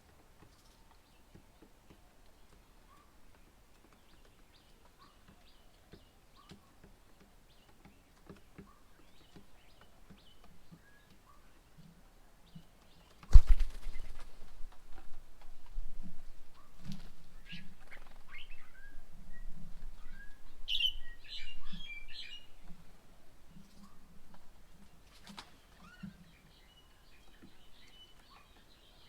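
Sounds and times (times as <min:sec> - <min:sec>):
faint bird chirps: 0:16.2 - 0:24.2, 0:25.1 - 0:29.0.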